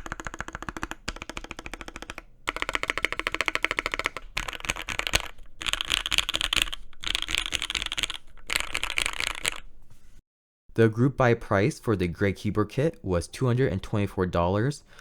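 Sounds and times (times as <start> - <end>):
mechanical keyboard typing: 0.0 - 9.6.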